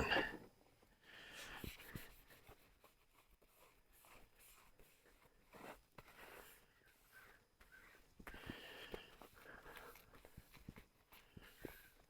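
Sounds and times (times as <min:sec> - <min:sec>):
soft handling ticks and scrapes: 0:01.3 - 0:12.0.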